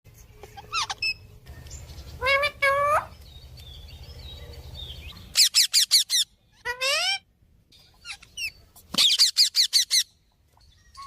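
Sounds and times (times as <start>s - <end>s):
parrot calling and squawking: 0.4s - 1.3s, 2.2s - 3.2s, 5.2s - 7.3s, 7.9s - 10.2s.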